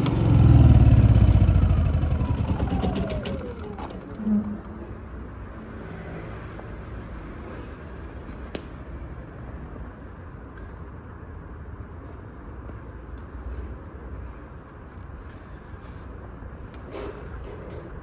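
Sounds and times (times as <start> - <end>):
generator running: 0.0 - 4.9.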